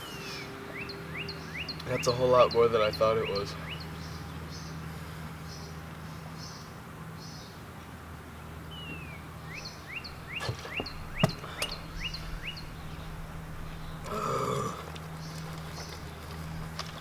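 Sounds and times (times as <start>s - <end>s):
bird chirping: 0.0s - 4.8s, 8.3s - 16.7s
steady low hum: 7.9s - 17.0s.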